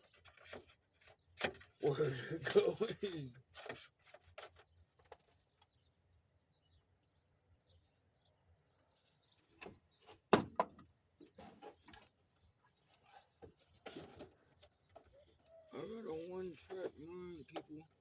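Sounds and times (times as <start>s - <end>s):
faint bird chirps: 11.2s - 18.0s.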